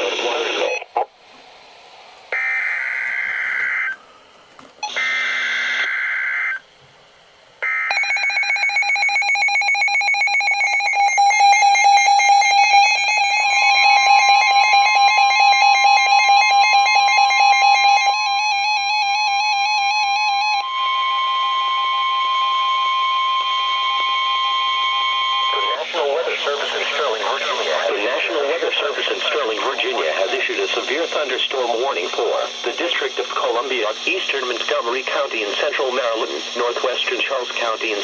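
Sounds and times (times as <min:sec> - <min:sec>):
rapidly pulsing electronic alarm: 0:02.4 - 0:04.0, 0:04.8 - 0:06.6, 0:07.6 - 0:33.2
steady attention tone: 0:07.7 - 0:38.0.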